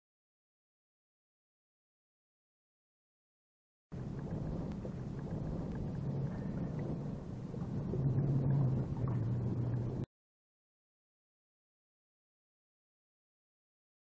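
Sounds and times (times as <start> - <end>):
water: 3.9 - 10.1
wind: 3.9 - 10.1
outboard motor droning: 4.0 - 10.1.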